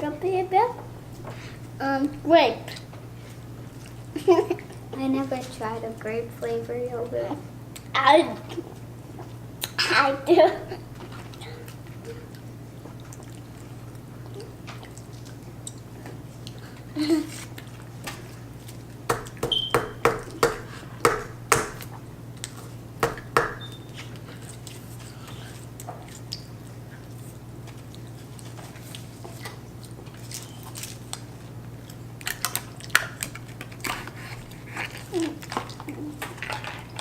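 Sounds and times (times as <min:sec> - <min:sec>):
steady low hum: 0:00.0 - 0:37.0
food packaging clicking and tapping: 0:19.1 - 0:24.2.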